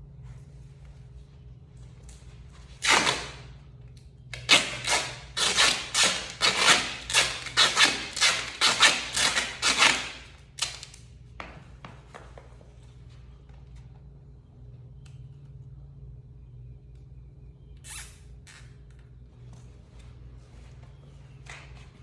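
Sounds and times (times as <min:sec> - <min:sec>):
rasping rips of restraints: 0:02.8 - 0:03.4, 0:04.3 - 0:11.0.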